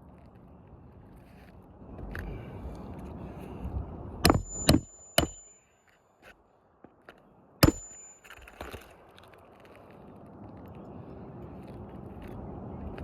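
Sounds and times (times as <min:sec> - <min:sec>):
hammer striking roof: 0:04.2 - 0:05.6, 0:07.6 - 0:08.2.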